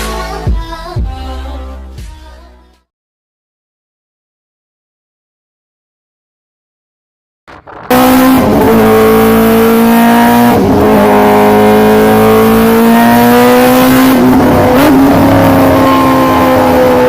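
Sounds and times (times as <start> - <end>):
motorcycle engine accelerating: 7.6 - 17.0.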